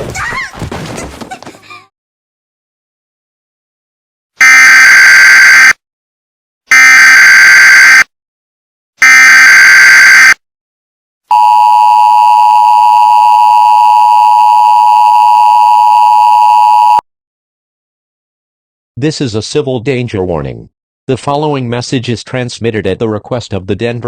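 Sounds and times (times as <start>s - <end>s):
two-tone attention signal: 11.3s - 17.0s.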